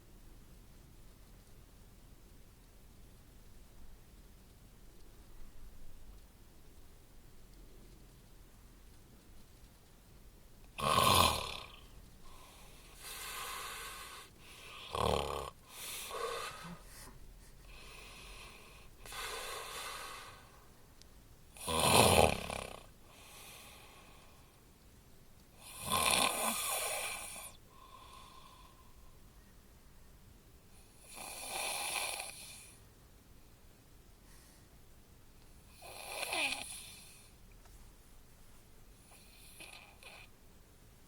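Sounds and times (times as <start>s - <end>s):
loud harsh snores: 10.8s - 11.8s, 13.0s - 16.8s, 21.6s - 22.9s, 25.6s - 27.5s, 31.1s - 32.6s, 35.8s - 37.0s
soft breathing snores: 10.8s - 20.7s, 21.6s - 24.6s, 25.6s - 29.1s, 30.8s - 32.8s, 35.6s - 37.4s, 39.0s - 40.3s.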